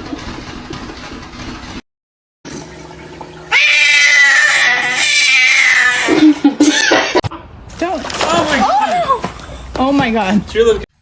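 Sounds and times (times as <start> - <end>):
cat meowing: 3.5 - 6.2.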